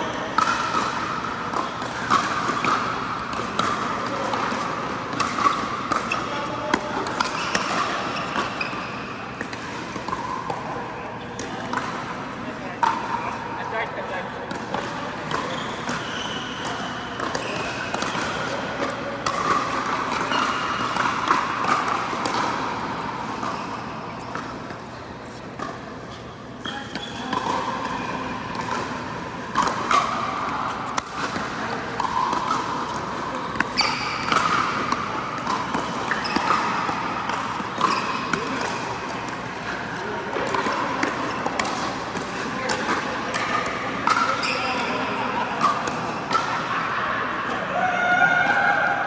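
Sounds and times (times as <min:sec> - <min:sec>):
ball bouncing on court: 0:00.0 - 0:10.7, 0:14.5 - 0:24.9, 0:26.6 - 0:46.7
paddles hitting plastic ball: 0:29.5 - 0:44.9.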